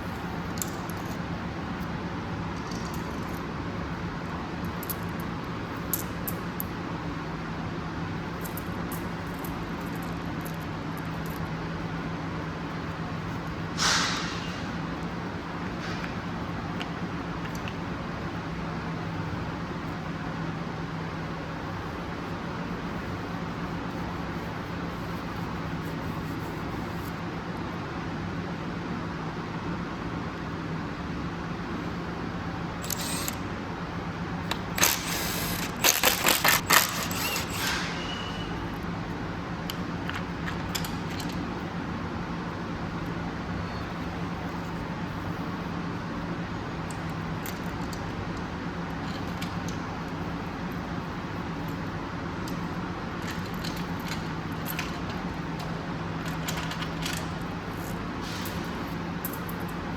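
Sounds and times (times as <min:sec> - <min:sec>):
steady background hum: 0:00.0 - 0:59.9
metal tools clattering: 0:53.2 - 0:58.7.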